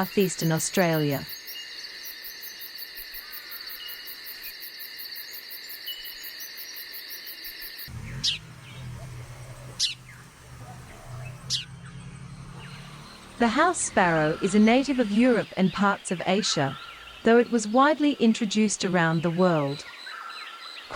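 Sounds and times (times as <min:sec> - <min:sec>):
insect chorus trilling: 0:00.0 - 0:17.8
bird whistling: 0:08.0 - 0:11.8.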